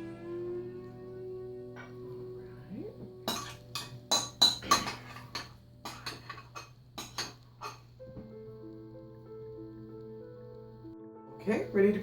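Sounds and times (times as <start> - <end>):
spoon clinking against bowl: 3.3 - 7.8.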